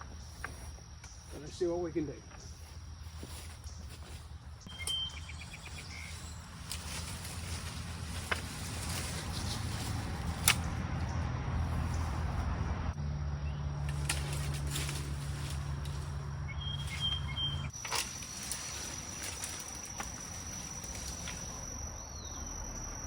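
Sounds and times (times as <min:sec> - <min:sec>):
insect trill: 0:00.0 - 0:23.0
steady low rumble: 0:02.4 - 0:22.6
pruners snapping tree limbs: 0:04.7 - 0:12.6, 0:13.8 - 0:21.7.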